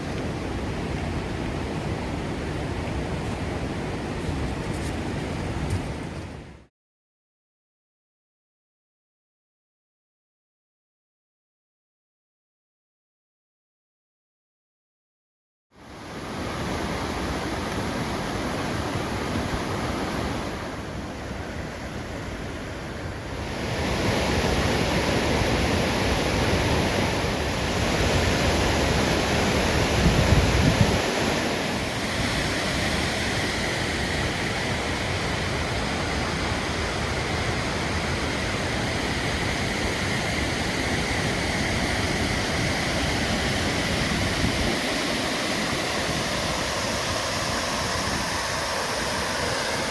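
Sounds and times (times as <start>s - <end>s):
wind buffeting microphone: 21.6s - 49.9s
waterfall rushing: 23.5s - 49.9s.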